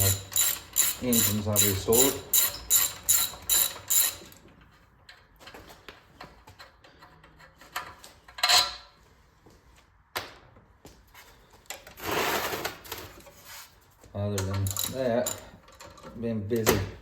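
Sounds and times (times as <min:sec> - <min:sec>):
ratchet wrench clicking: 0:00.0 - 0:04.4, 0:14.6 - 0:15.5
tools and parts clicking and knocking: 0:00.0 - 0:08.9, 0:14.3 - 0:17.0.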